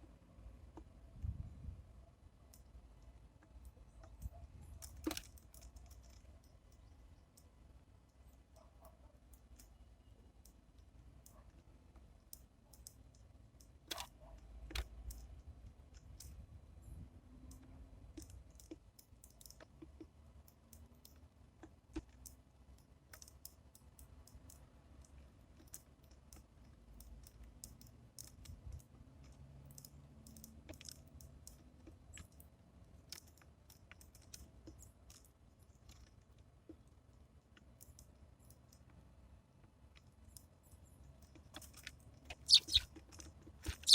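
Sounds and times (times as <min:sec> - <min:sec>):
birds pecking seed: 0:39.8 - 0:43.9.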